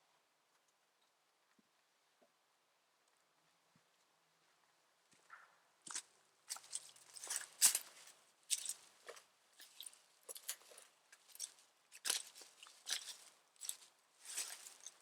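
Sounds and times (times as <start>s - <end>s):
footsteps crunching: 5.9s - 15.0s.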